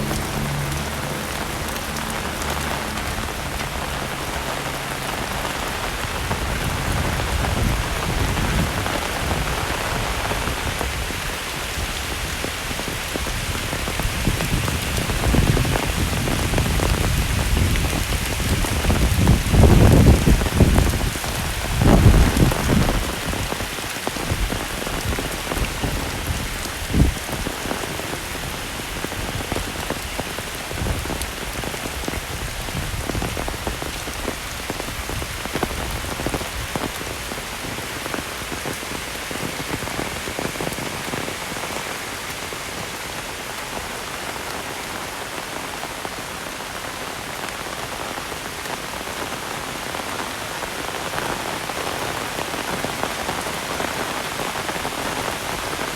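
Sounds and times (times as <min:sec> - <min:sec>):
deep rumbling surges: 0:00.0 - 0:08.8
heavy rain falling: 0:00.0 - 0:55.9.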